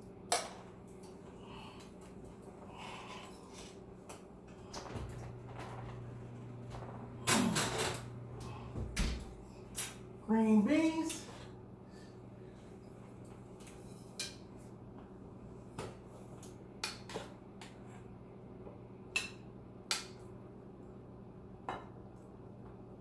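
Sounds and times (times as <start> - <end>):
steady low hum: 0.0 - 16.8.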